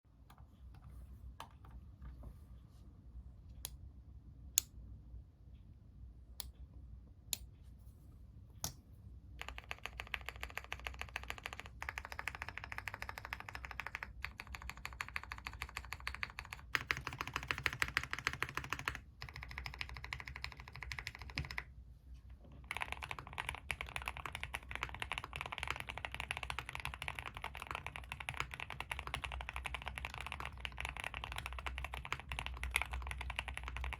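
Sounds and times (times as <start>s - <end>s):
mechanical keyboard typing: 9.4s - 21.7s, 22.6s - 33.9s.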